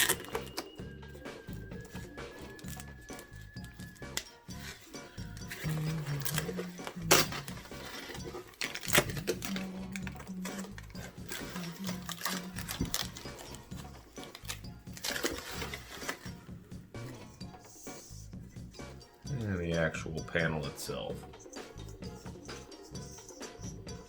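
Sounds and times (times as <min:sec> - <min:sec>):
packaging clattering and rustling: 0:00.0 - 0:00.8, 0:01.7 - 0:16.4
faint background music: 0:00.0 - 0:24.0.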